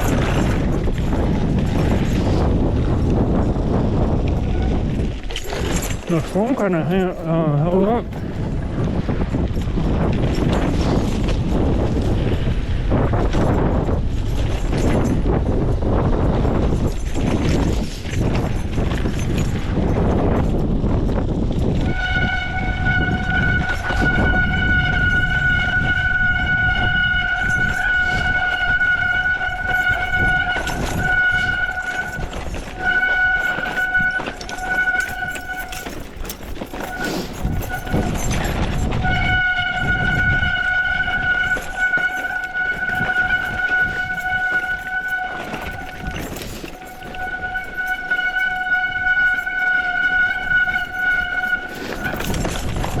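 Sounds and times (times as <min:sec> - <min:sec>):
rumble and rattling on rough ground: 0:00.0 - 0:53.0
bike brakes squealing: 0:22.1 - 0:53.0.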